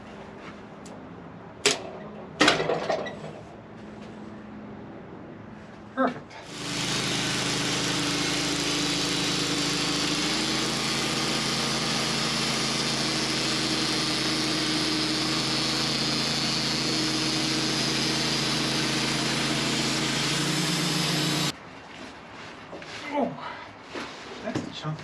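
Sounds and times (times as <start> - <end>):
band sawmill engine hum: 5.5 - 21.6
saw blade cutting log: 6.4 - 21.5.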